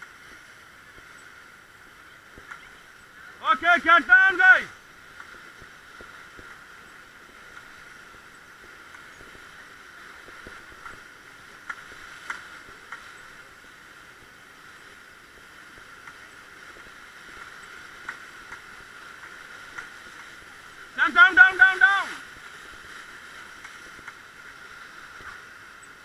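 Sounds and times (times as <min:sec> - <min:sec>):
river water rushing: 0:00.0 - 0:26.0.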